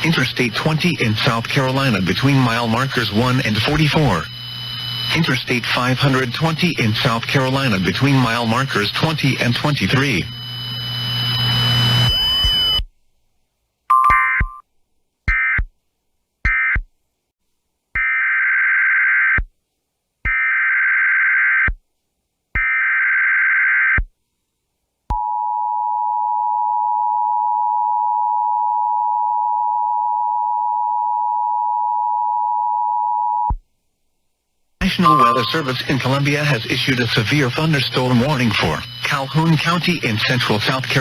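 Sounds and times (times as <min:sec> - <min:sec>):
digital data bursts: 0:00.0 - 0:10.4, 0:34.8 - 0:41.0
steady warning alarm tone: 0:00.0 - 0:12.8, 0:34.8 - 0:41.0.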